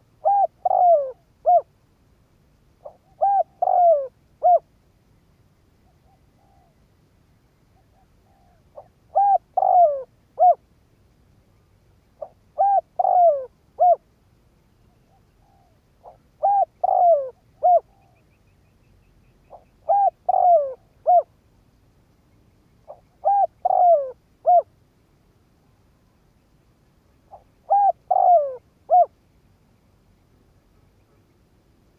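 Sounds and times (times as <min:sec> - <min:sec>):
dove cooing: 0:00.0 - 0:01.7, 0:02.8 - 0:04.7, 0:05.9 - 0:06.8, 0:07.8 - 0:10.6, 0:12.2 - 0:14.0, 0:15.0 - 0:18.3, 0:19.5 - 0:21.3, 0:22.9 - 0:24.7, 0:27.3 - 0:29.2.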